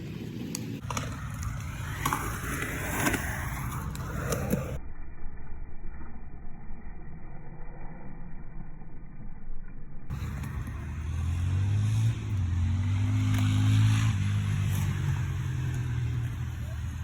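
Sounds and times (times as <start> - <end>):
skateboard wheels rolling on pavement: 0.0 - 4.8, 10.1 - 17.0.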